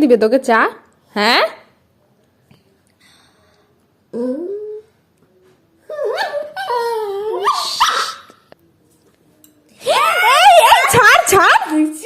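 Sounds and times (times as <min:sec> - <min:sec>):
dog whining and yowling: 0:05.9 - 0:08.3.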